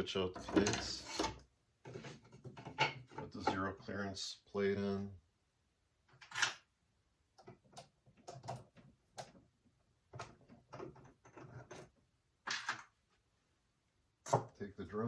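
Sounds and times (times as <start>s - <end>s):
plate knocking and scraping: 0.4s - 3.7s.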